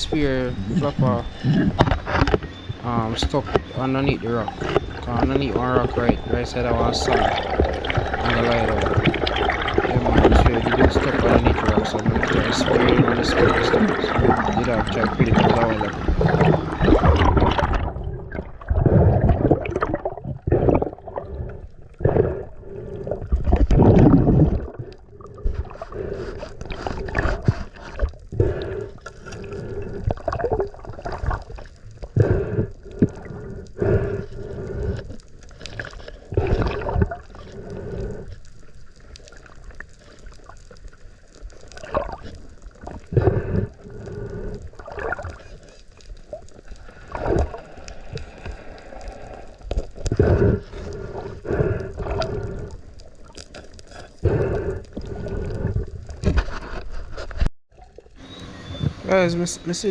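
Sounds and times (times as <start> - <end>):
faint low hum: 0.0 - 17.4, 58.2 - 59.9
muffled water sloshing underwater: 0.0 - 59.9.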